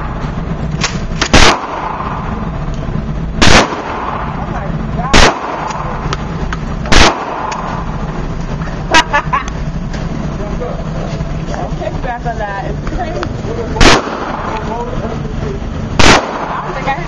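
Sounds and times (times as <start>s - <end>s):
gunshots: 0.0s - 2.6s, 3.4s - 8.3s, 13.8s - 15.0s, 15.9s - 17.0s.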